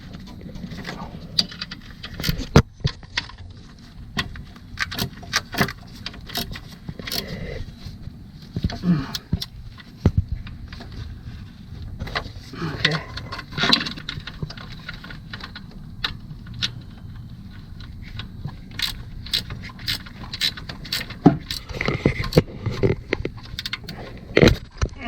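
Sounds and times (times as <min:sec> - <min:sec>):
wrench clicking and clinking: 0:18.7 - 0:22.4.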